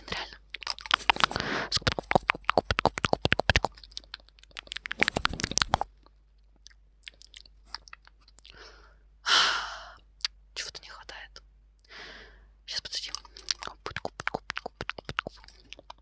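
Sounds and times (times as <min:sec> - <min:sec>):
crunchy chewing: 0:00.0 - 0:08.6, 0:13.0 - 0:16.0
mouth clicks: 0:00.0 - 0:08.7, 0:12.8 - 0:16.0.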